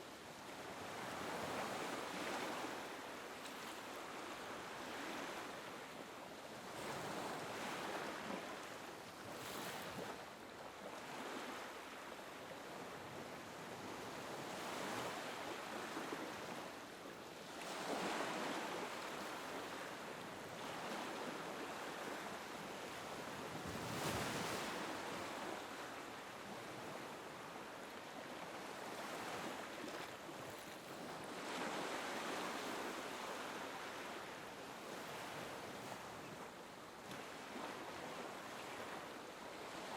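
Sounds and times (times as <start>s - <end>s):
small waves lapping on beach: 0.0s - 39.9s
wind: 0.0s - 39.9s.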